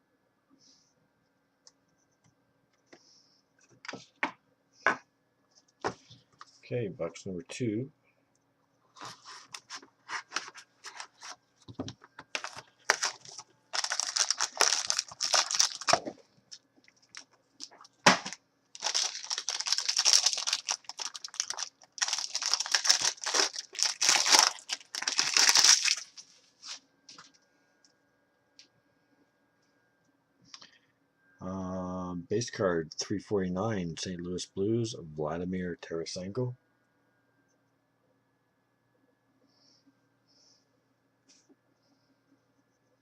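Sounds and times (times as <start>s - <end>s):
plastic shrink wrap tearing: 12.4s - 26.8s.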